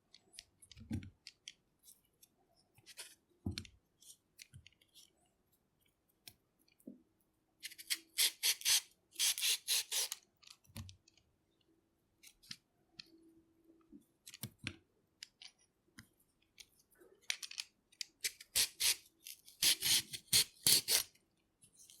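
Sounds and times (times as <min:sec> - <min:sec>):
peeler scraping a carrot: 0:07.6 - 0:10.2.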